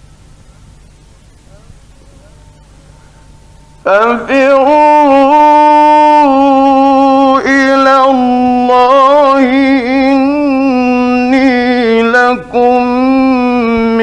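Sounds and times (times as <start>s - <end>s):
man reciting melodically: 3.8s - 14.0s.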